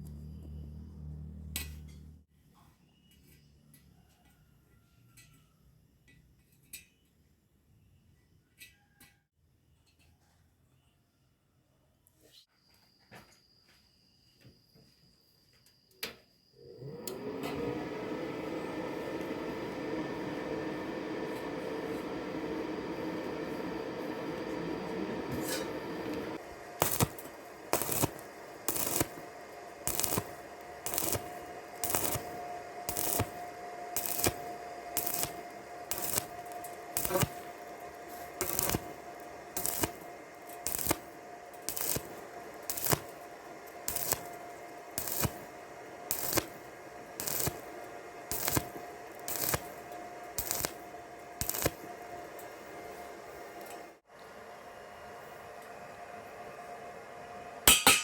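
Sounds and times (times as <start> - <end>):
faint steady hum: 15.7 - 58.0
steady noise: 18.9 - 53.3
hammer tapping on steel: 57.7 - 58.0.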